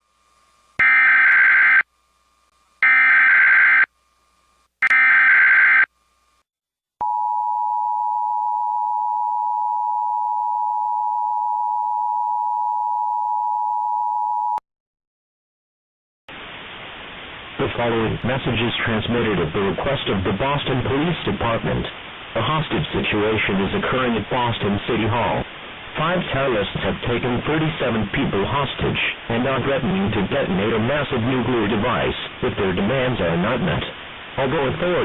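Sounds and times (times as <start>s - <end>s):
buzzing data tones: 0.8s - 1.9s.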